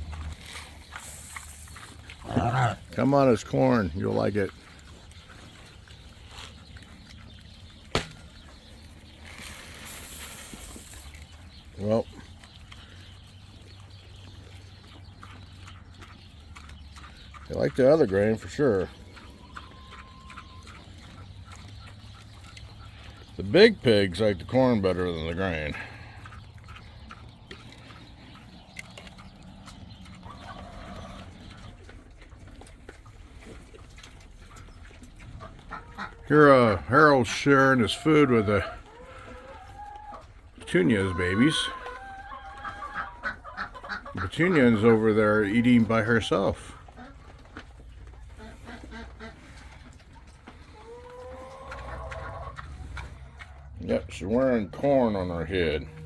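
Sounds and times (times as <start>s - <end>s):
pigs crunching grain: 0.0s - 56.0s
pigs grunting softly: 0.0s - 56.0s
hissing rustle: 0.3s - 2.0s, 9.2s - 11.3s.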